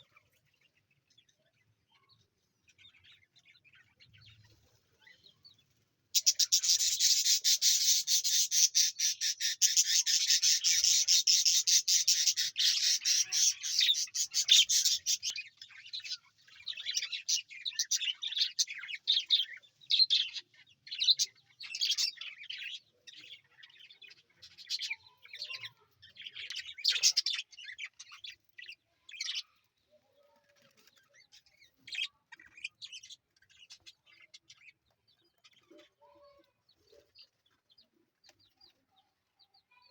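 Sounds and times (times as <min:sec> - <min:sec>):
budgerigars chirping: 0:06.2 - 0:28.4.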